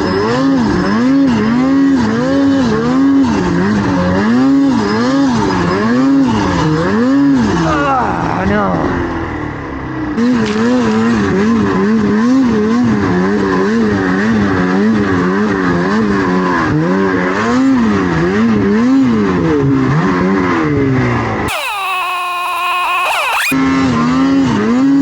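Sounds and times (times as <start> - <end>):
snowmobile engine revving: 21.5 - 23.6.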